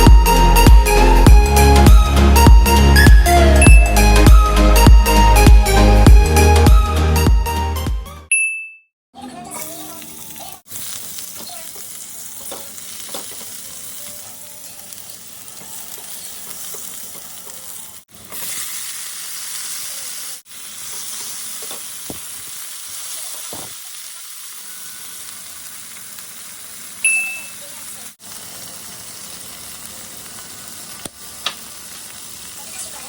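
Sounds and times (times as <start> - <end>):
food sizzling in a frying pan: 9.5 - 33.0.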